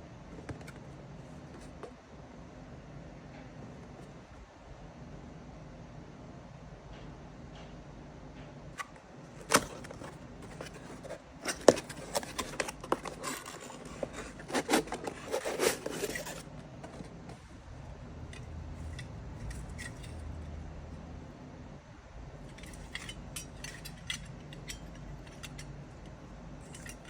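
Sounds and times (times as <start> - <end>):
packaging clicking and rustling: 9.4 - 17.5.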